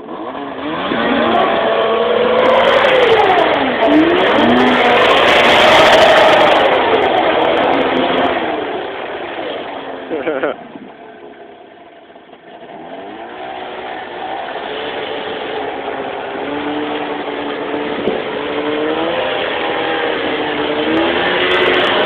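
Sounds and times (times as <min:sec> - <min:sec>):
snowmobile engine revving: 0:00.0 - 0:11.6, 0:12.4 - 0:22.0.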